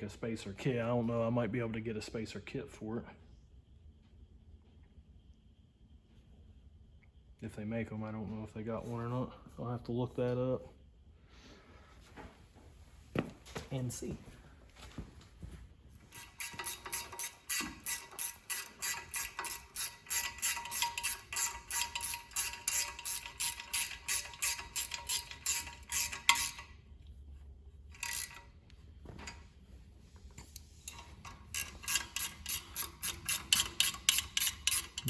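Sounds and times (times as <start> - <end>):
ratchet wrench clicking: 16.1 - 26.7, 28.0 - 28.4, 30.5 - 35.0.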